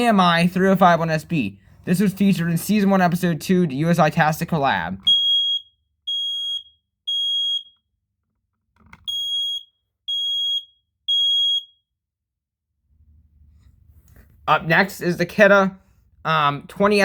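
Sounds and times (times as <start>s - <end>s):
smoke alarm beeping: 5.0s - 7.9s, 9.0s - 11.9s.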